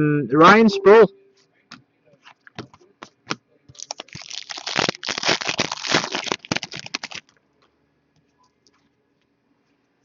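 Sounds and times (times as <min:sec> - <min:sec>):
wrapper crinkling and tearing: 0:03.8 - 0:07.4.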